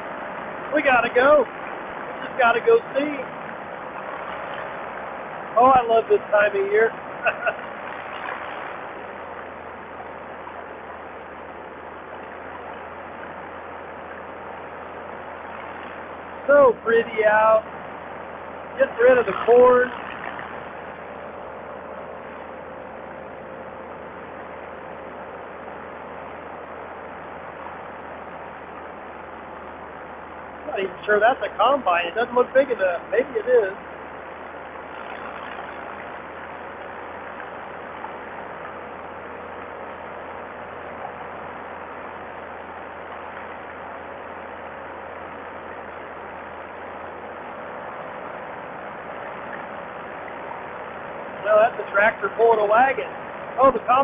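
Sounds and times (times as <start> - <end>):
paramotor engine and propeller drone: 0.0 - 54.0.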